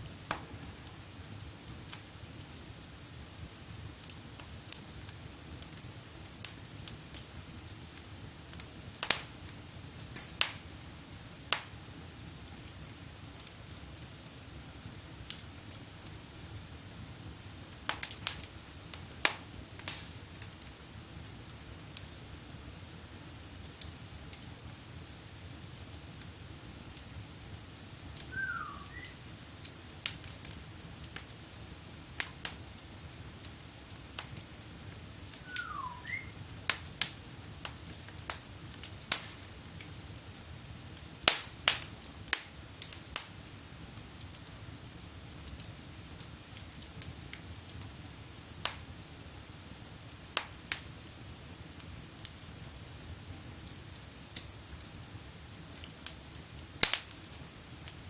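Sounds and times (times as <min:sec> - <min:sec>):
wood fire crackling and popping: 0:00.0 - 0:58.0
brief falling whistle: 0:28.3 - 0:29.2, 0:35.5 - 0:36.3.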